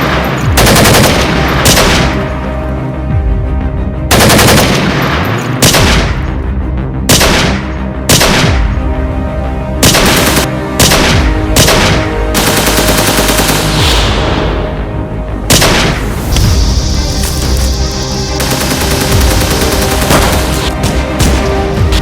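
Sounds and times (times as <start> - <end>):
gunshots: 0.0 - 2.4, 4.1 - 6.4, 7.0 - 8.8, 9.8 - 14.7, 15.5 - 17.6, 18.3 - 22.0
background music: 0.0 - 22.0.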